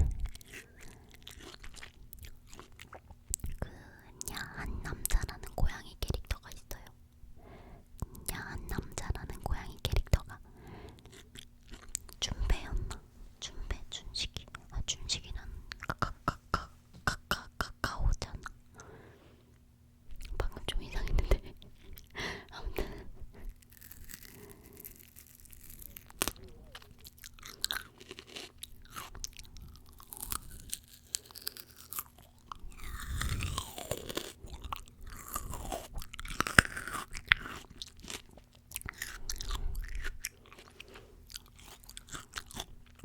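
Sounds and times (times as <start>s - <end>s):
crisp fruit bites and chewing: 0.0s - 3.6s, 10.9s - 12.2s, 23.4s - 43.0s
wet mouth sounds: 13.9s - 18.6s, 20.1s - 43.0s.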